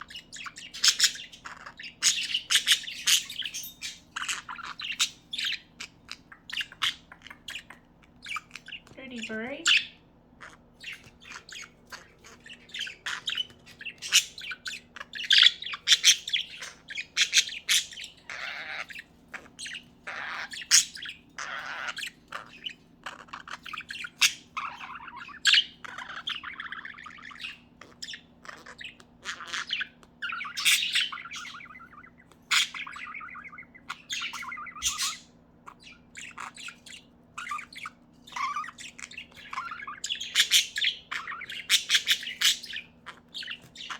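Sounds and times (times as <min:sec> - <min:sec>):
budgerigars chirping and squawking: 0:00.0 - 0:43.9.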